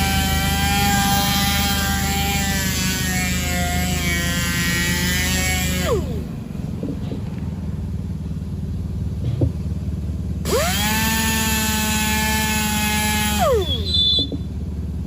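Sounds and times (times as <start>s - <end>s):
rotary sander running: 0.0s - 6.4s, 10.4s - 13.9s
steady low hum: 0.0s - 15.0s.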